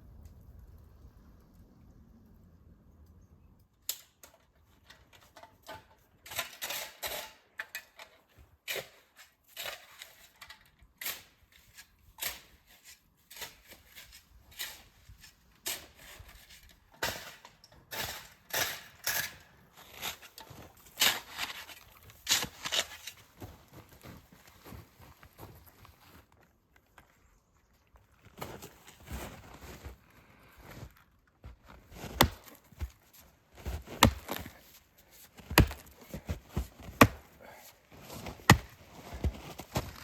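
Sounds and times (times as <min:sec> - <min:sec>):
footsteps crunching through snow: 0:19.7 - 0:26.4, 0:28.3 - 0:40.0.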